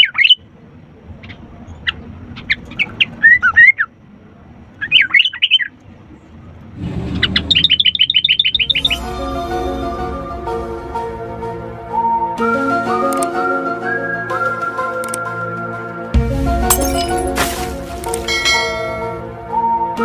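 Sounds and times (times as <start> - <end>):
bulbul singing whistled phrases: 7.6 - 9.0
music: 8.6 - 20.0.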